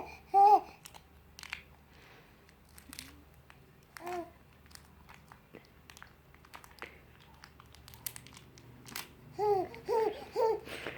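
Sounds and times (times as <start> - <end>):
toddler babbling: 0.0 - 0.7, 9.3 - 10.7
wrapper crinkling: 0.8 - 10.1.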